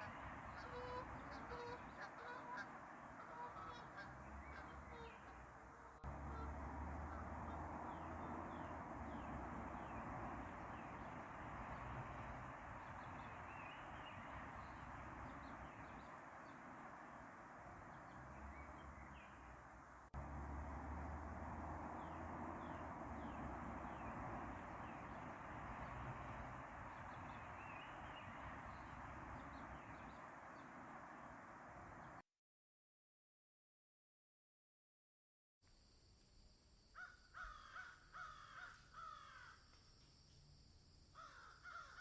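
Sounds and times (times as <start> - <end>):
birds chirping: 0.0 - 32.2.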